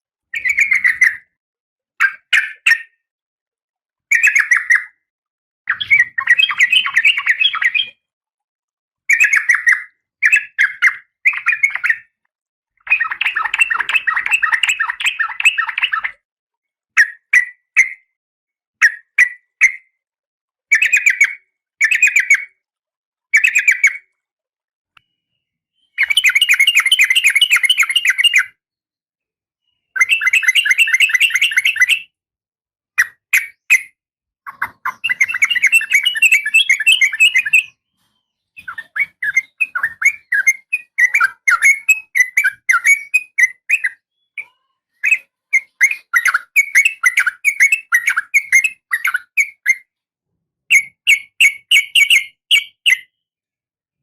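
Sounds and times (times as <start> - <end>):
bird calls and chattering trills: 0.3 - 1.4, 2.0 - 3.0, 4.1 - 5.0, 5.7 - 8.1, 9.1 - 12.2, 12.8 - 16.2, 20.7 - 22.7, 23.3 - 24.2, 25.0 - 28.6, 29.6 - 32.1, 33.0 - 50.0, 50.7 - 53.2.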